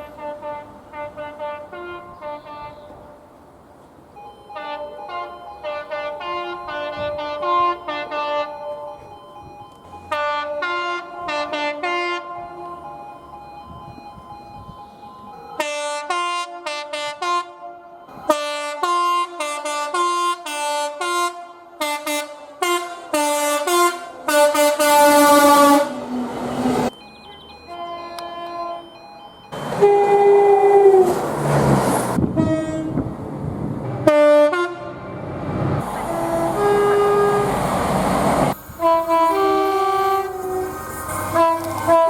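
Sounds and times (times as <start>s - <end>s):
two-tone train horn blasts: 0.0s - 3.2s, 4.5s - 8.7s, 10.1s - 12.7s, 15.6s - 29.0s, 29.6s - 31.2s, 32.2s - 33.1s, 33.9s - 35.3s, 35.9s - 37.8s, 38.8s - 42.0s
passing train: 0.0s - 42.0s.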